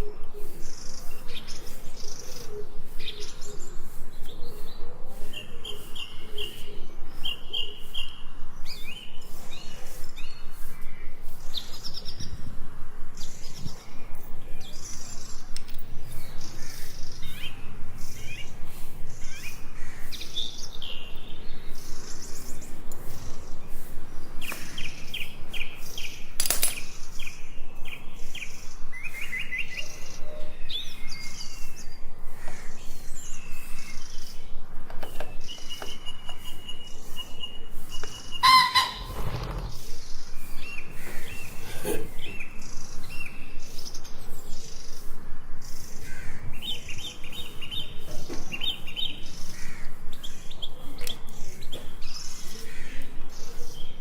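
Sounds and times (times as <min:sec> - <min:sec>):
small birds chirping: 0:00.0 - 0:54.0.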